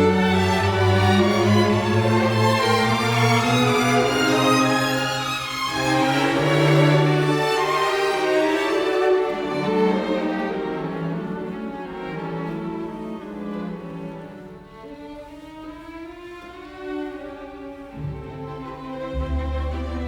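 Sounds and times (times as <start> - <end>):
cello playing held notes: 0.0 - 14.9, 16.8 - 20.0.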